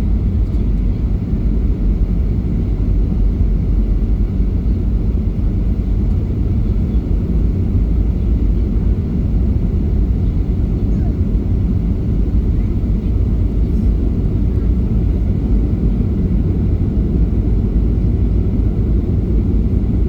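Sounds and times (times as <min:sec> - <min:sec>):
airplane engine rumble in cabin: 0:00.0 - 0:20.0.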